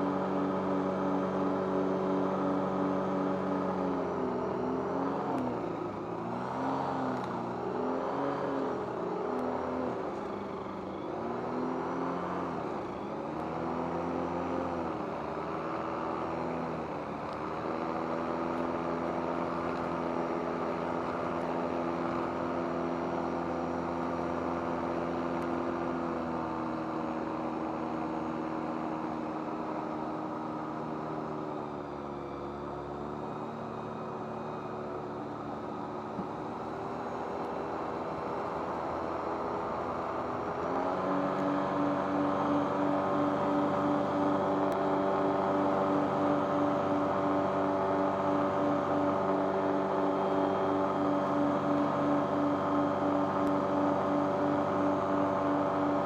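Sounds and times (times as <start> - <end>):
aircraft engine and propeller: 0.0 - 56.0.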